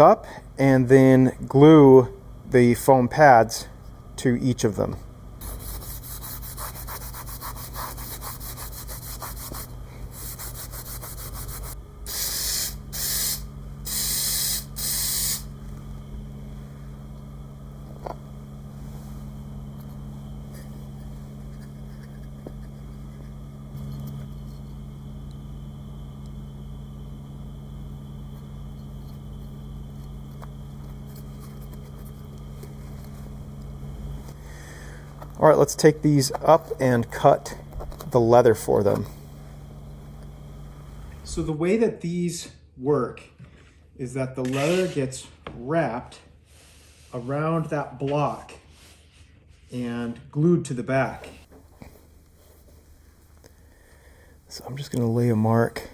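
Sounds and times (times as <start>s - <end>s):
low steady hum: 0.0s - 43.2s, 44.0s - 55.9s
sandpaper scuffing wood: 5.4s - 15.4s, 46.6s - 47.3s
spray adhesive hissing: 5.4s - 15.5s.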